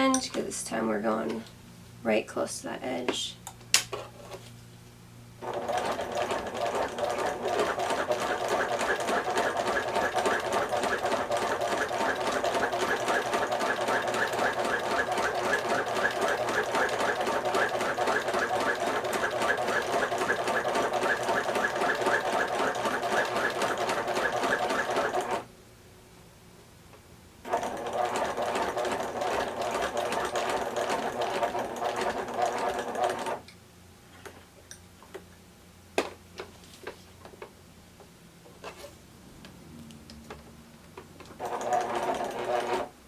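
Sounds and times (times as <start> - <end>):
sewing machine stitching: 5.4 - 25.5, 27.5 - 33.4, 41.2 - 42.9.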